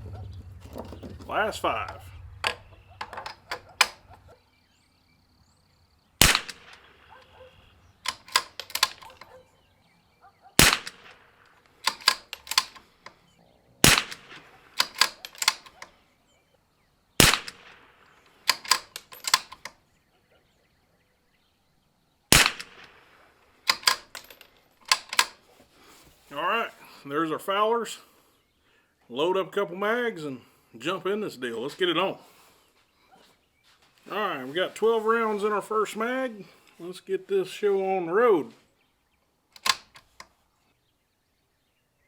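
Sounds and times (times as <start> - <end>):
rifle shots: 0.0 - 4.4, 6.2 - 9.2, 10.6 - 12.8, 13.8 - 15.8, 17.2 - 19.5, 22.3 - 25.2
rifle bolt clicking: 2.4 - 4.2, 6.2 - 9.4, 10.6 - 13.2, 13.8 - 15.9, 17.2 - 17.8, 18.5 - 19.8, 22.4 - 23.0, 23.7 - 25.4, 39.6 - 40.3.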